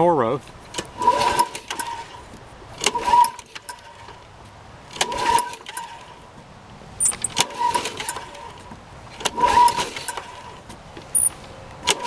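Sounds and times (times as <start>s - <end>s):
lawn mower engine turning over: 0.0s - 12.0s
recoil cord pull: 0.7s - 2.2s, 2.8s - 4.2s.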